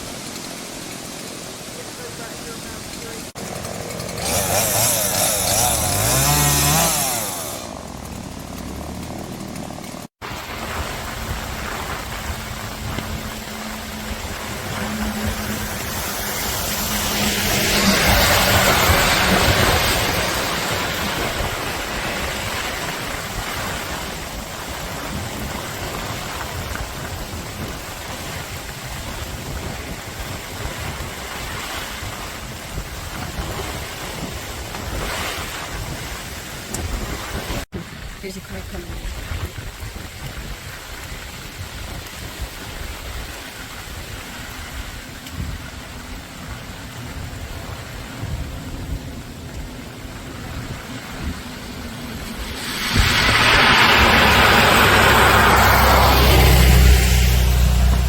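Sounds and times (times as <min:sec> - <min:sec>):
steady rushing noise: 0:00.0 - 0:58.0
small engine revving: 0:02.0 - 0:10.1, 0:11.7 - 0:36.0, 0:52.2 - 0:58.0.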